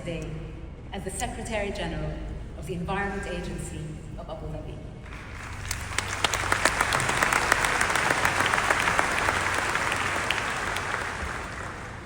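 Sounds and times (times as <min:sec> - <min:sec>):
audience applause: 0:05.1 - 0:12.0.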